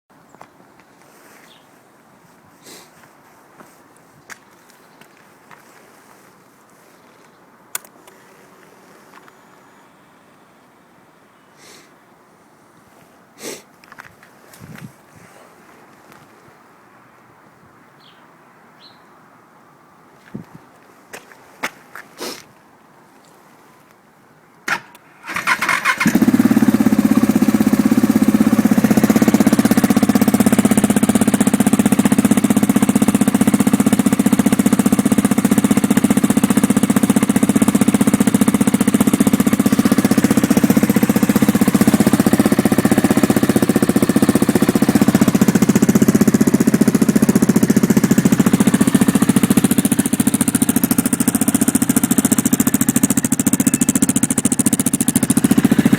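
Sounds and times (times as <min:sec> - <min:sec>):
motorcycle engine starting and idling: 0:24.6 - 0:55.9.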